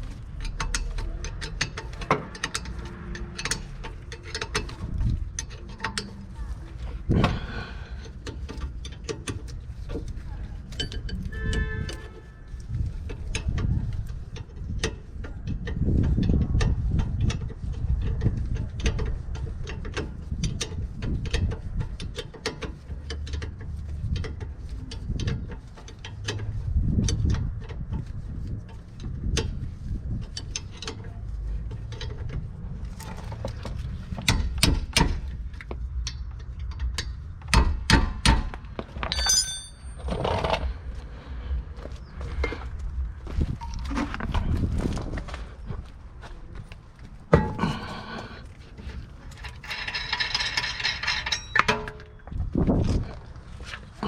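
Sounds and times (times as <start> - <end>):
metallic clicks and knocks: 0.0 - 6.4, 8.0 - 40.7, 47.2 - 52.5
low rumble: 38.7 - 51.6.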